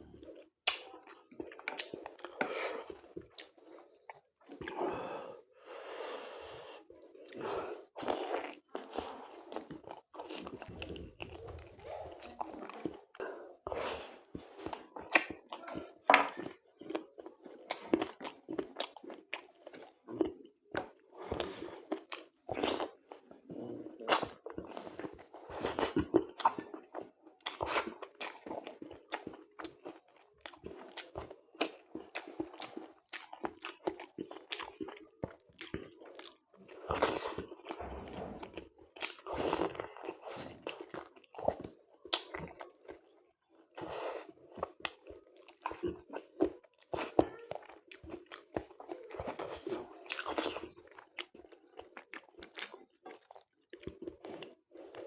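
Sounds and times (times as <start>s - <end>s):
person chewing: 0.0s - 5.3s, 6.0s - 55.0s.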